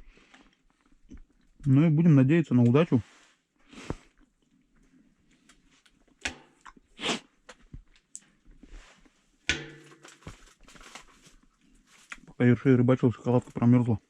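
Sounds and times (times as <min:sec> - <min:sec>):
rustling sweeps: 0:03.0 - 0:03.4
handling knocks and clicks: 0:09.5 - 0:11.0.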